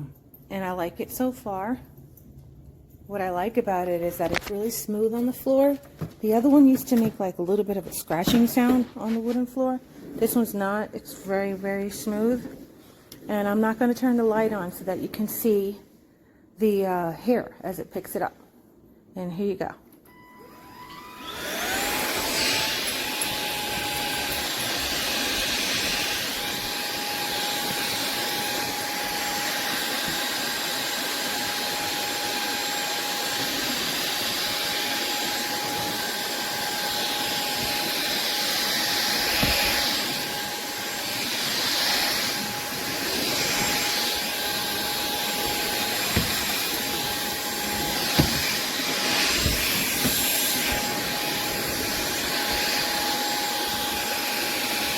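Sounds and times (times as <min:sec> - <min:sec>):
stick vacuum whining: 0:20.1 - 0:54.9.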